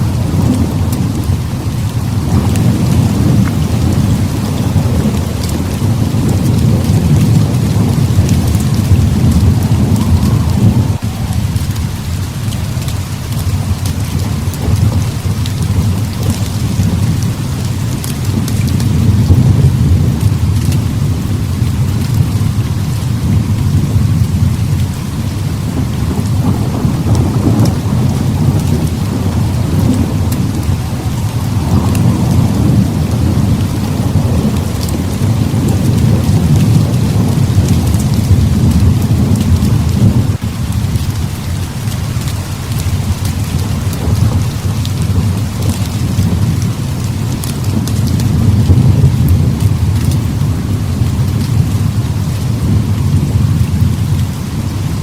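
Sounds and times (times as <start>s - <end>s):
heavy rain pouring: 0.0s - 55.0s
low thunder rumble: 0.0s - 55.0s.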